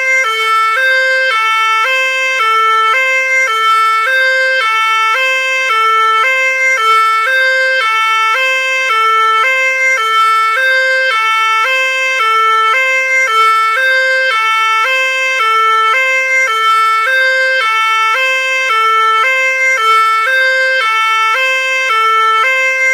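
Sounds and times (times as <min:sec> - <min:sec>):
fire engine two-tone siren: 0:00.0 - 0:22.9.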